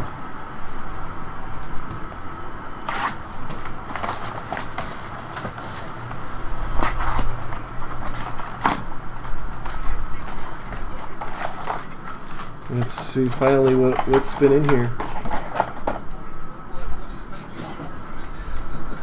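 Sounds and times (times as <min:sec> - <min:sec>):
steady low hum: 0:00.0 - 0:19.0
plastic wrapping crinkling and tearing: 0:02.8 - 0:15.8.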